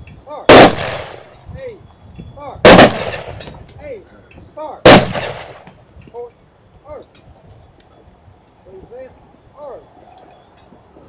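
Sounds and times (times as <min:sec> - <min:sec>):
rifle volleys with echo: 0:00.5 - 0:01.3, 0:02.6 - 0:03.5, 0:04.8 - 0:05.7.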